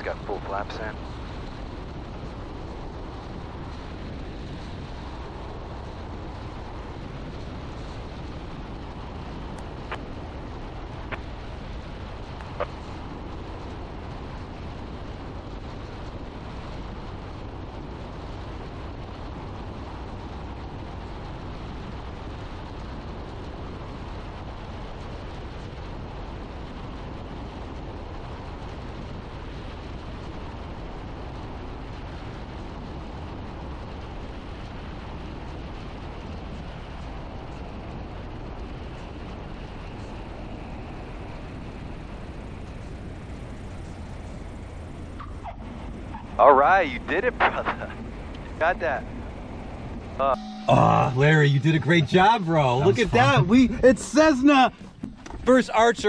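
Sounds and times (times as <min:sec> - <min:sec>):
light aircraft engine and propeller: 0:00.0 - 0:56.0
airflow: 0:50.2 - 0:56.0.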